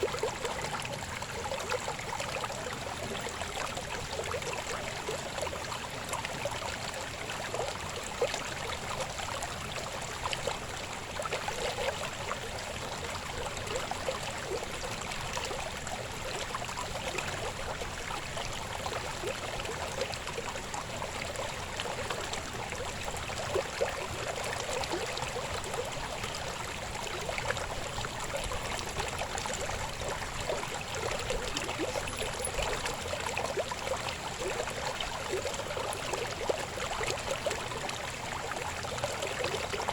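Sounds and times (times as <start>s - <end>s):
water rushing over stones: 26.4s - 39.9s.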